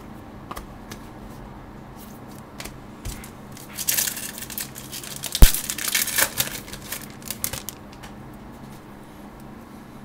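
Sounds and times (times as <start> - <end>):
low electrical hum: 0.0 - 10.0.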